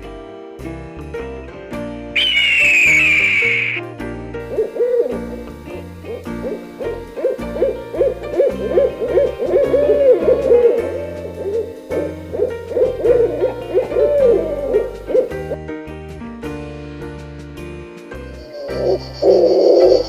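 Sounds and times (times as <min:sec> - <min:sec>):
background music with keyboard: 0:00.0 - 0:20.0
bird calling: 0:02.2 - 0:03.8, 0:04.5 - 0:15.5, 0:18.4 - 0:20.0.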